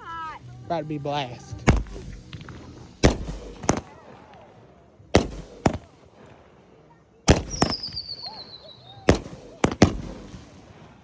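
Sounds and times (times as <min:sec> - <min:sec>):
fireworks bangs: 0:01.4 - 0:11.0
falling firework whistle: 0:07.3 - 0:09.8.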